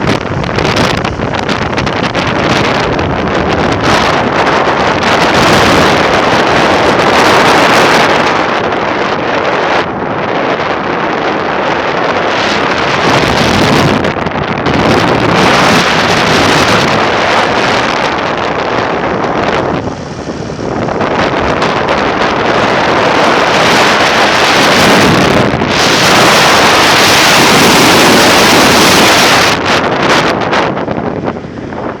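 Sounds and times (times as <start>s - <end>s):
wind gusting on microphone: 0.0s - 32.0s.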